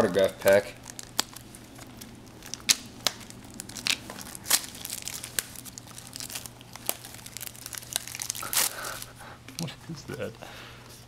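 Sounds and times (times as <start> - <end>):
wrapper tearing and crinkling: 0.4 - 9.2.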